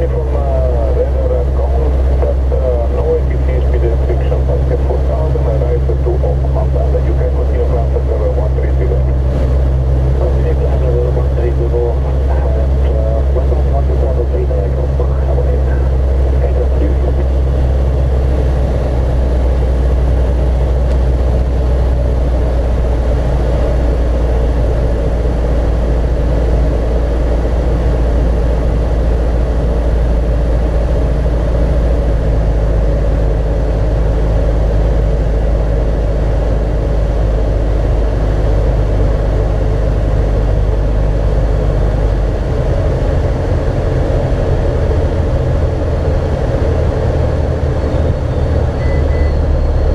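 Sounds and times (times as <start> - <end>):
aircraft engine and propeller running: 0.0 - 49.9.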